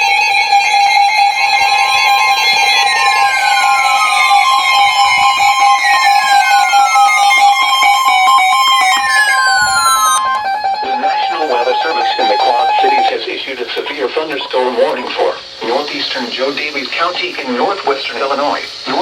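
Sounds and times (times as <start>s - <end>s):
falling tone sweep: 0.0s - 13.2s
fluttering alarm tone: 0.0s - 13.6s.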